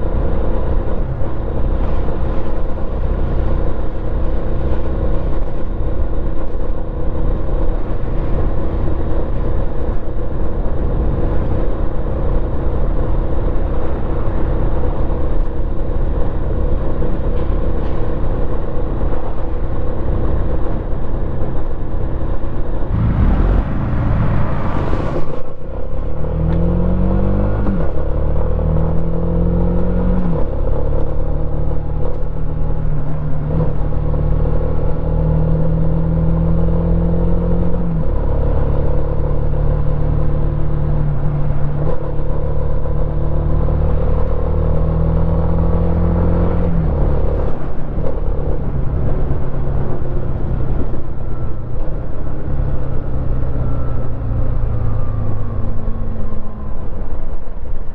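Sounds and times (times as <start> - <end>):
motorcycle engine revving: 22.9 - 25.6.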